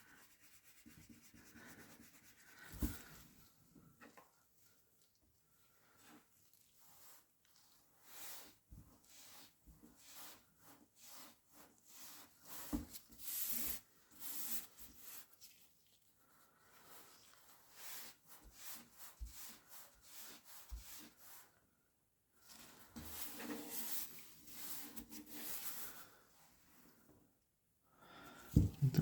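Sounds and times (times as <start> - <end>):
rubbing strokes on a card: 0.0 - 3.2, 5.9 - 21.6, 22.6 - 26.2.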